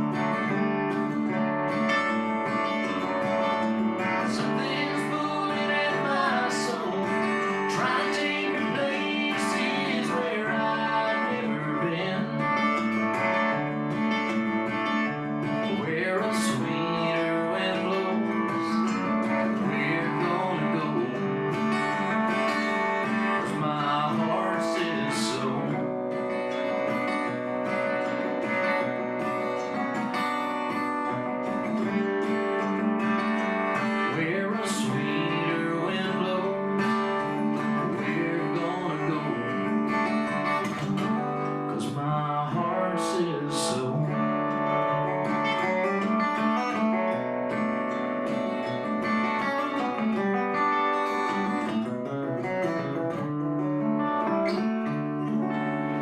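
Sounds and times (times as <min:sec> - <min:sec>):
strummed acoustic guitar: 0:00.0 - 0:56.0.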